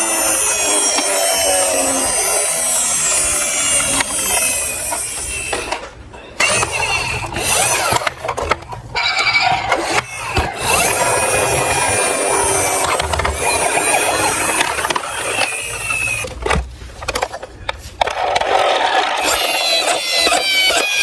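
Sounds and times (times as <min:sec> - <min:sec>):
falling gliding tones: 0:00.0 - 0:05.8
toy cars rattling down plastic track: 0:00.0 - 0:16.4, 0:18.0 - 0:21.0.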